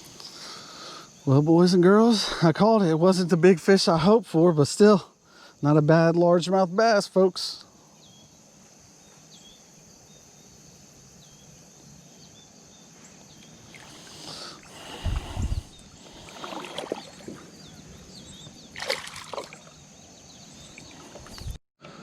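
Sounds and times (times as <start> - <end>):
insects droning: 0.0 - 22.0
creek water splashing: 13.6 - 17.8, 18.5 - 20.1.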